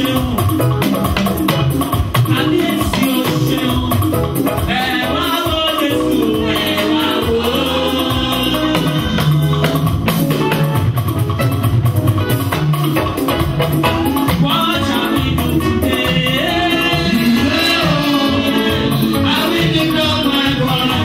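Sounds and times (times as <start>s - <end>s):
drum kit beat: 0.0s - 21.0s
shaker percussion: 0.0s - 21.0s
people singing: 2.3s - 10.5s, 14.0s - 21.0s.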